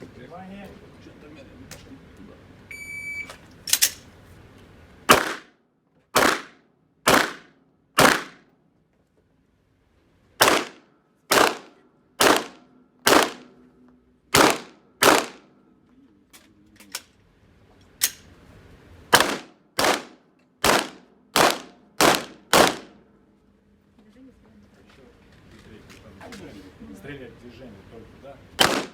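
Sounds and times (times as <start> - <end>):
pistol shots: 5.1 - 5.6, 6.2 - 8.5, 10.4 - 13.6, 14.3 - 15.5, 19.1 - 23.0, 28.6 - 28.9.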